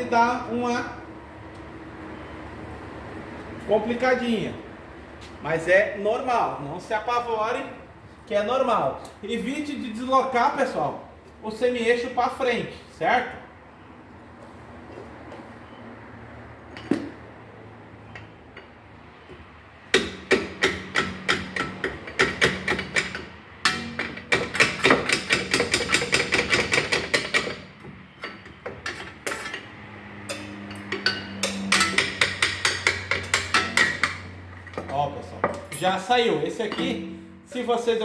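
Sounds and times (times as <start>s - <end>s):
rapid hammer blows on metal: 30.3s - 34.4s.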